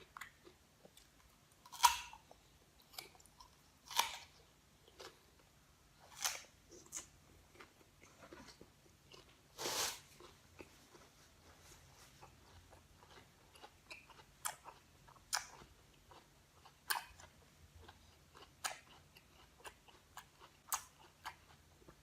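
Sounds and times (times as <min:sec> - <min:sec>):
guava crunching when bitten: 0:01.0 - 0:02.3, 0:02.9 - 0:04.3
soft chewing clicks: 0:12.2 - 0:22.0.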